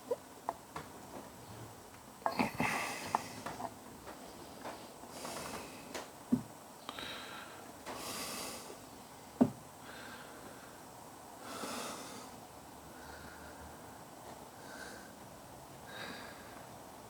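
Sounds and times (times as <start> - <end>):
person breathing through nose: 6.9 - 8.8.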